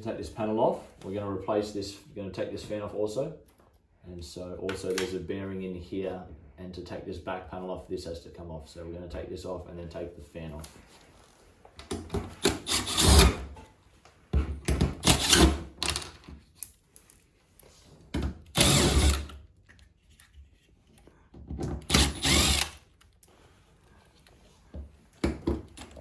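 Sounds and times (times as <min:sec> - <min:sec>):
power drill-driver whirring: 0:12.4 - 0:13.4, 0:15.0 - 0:15.6, 0:18.5 - 0:19.4, 0:21.8 - 0:23.0.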